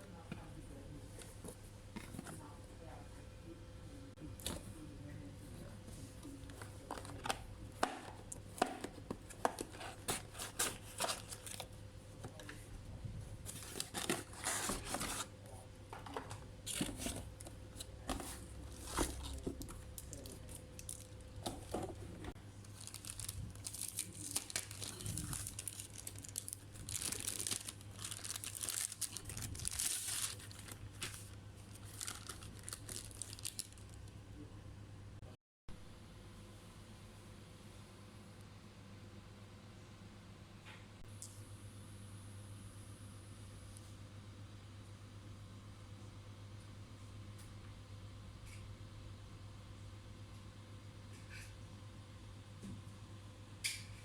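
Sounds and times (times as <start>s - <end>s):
faint electrical hum: 0.0s - 54.0s
plastic crinkling and tearing: 9.6s - 11.7s, 18.1s - 21.7s, 22.6s - 34.0s.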